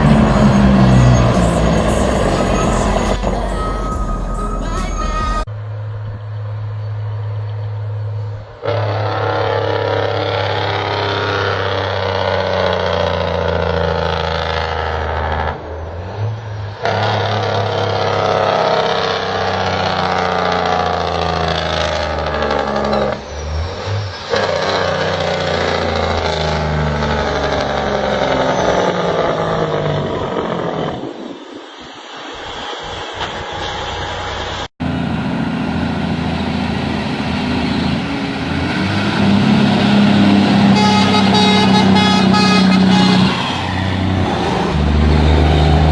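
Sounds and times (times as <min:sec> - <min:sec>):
rushing wind and road noise: 0:00.0 - 0:45.9
vehicle engine at high revs: 0:08.6 - 0:31.4, 0:32.3 - 0:45.9.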